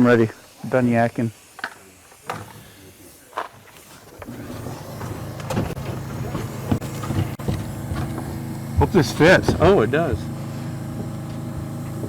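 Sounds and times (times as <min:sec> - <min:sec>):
motor humming: 0:03.9 - 0:12.0
sharp knocks: 0:05.7 - 0:12.0.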